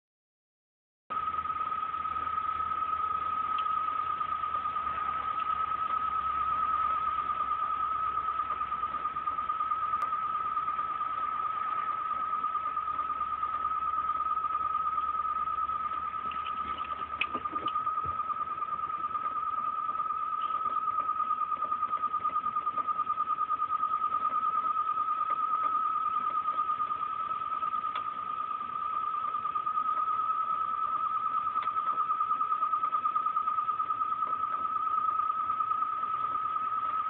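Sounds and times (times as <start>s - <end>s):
faint ticks: 3.5s - 3.8s, 20.3s - 32.4s.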